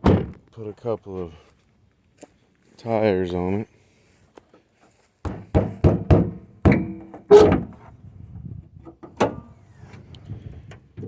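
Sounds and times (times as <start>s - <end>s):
dull thunks and knocks: 5.2s - 7.8s.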